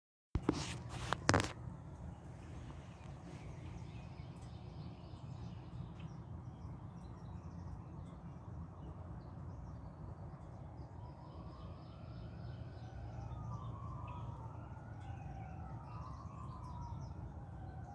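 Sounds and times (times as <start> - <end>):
low outdoor rumble: 0.4 - 17.9.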